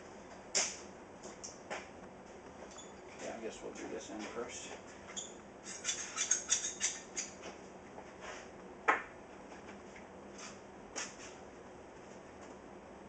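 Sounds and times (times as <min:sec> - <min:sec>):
squeaky scrapes on glass: 0:05.1 - 0:07.4.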